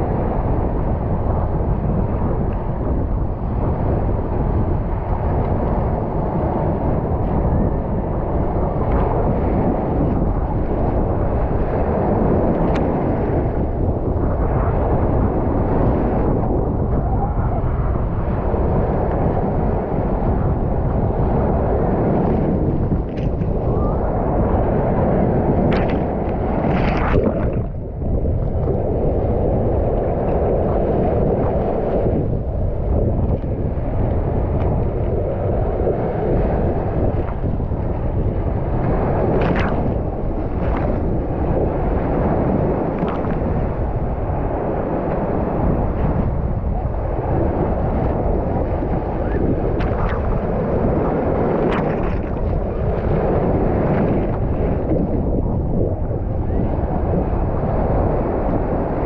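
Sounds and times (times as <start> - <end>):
waves washing onto shore: 0.0 - 59.0
wind rumble on microphone: 0.0 - 59.0.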